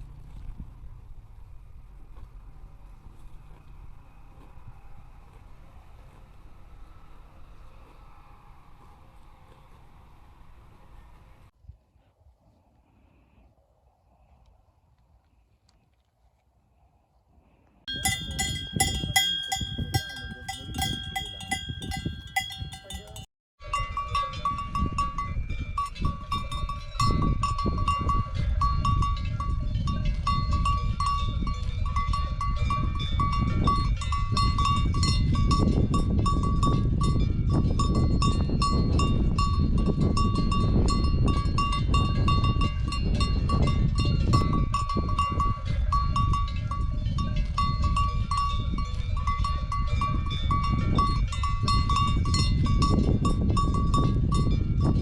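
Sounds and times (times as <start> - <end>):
cattle bells clanking: 17.9 - 55.0.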